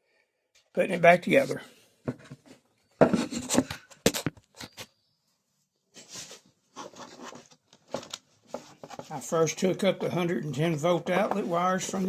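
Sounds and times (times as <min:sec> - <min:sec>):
rustling scrapes: 0:05.9 - 0:09.4, 0:11.1 - 0:12.0.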